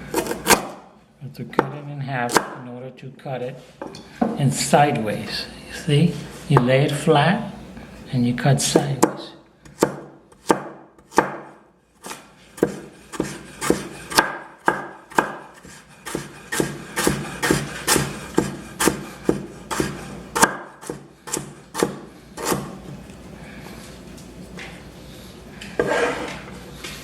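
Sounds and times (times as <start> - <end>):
knife chopping on cutting board: 0.1 - 0.8, 8.7 - 22.8.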